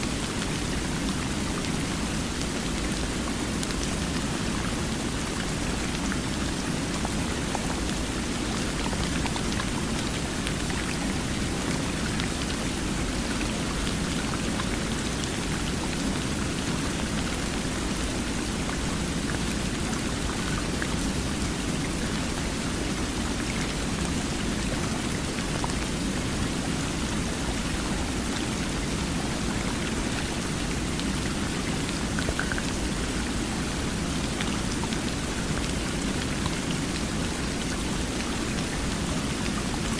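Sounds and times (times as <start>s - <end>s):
water flowing: 27.2s - 39.9s.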